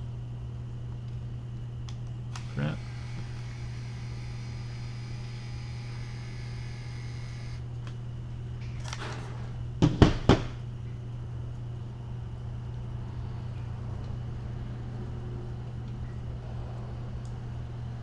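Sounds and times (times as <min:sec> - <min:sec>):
steady low hum: 0:00.0 - 0:18.0
label maker printing whine: 0:02.3 - 0:07.7.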